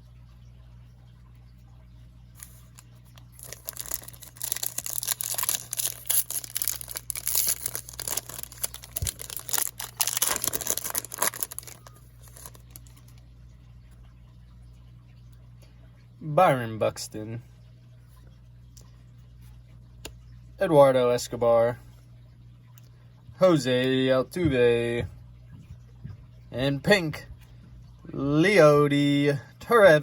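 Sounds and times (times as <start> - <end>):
foil wrapper tearing and crinkling: 2.4 - 13.1.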